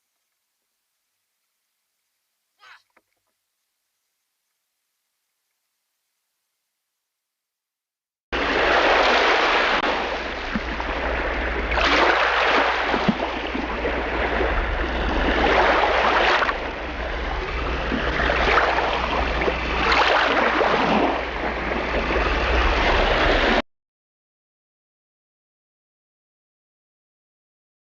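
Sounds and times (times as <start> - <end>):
water sloshing around kayak: 8.4 - 23.6
low rumble: 12.8 - 23.6.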